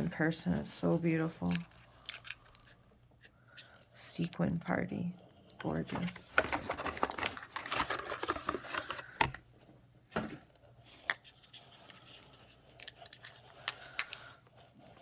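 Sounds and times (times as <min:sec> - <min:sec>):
small jars clicking and knocking: 0:01.4 - 0:04.9, 0:12.7 - 0:14.4.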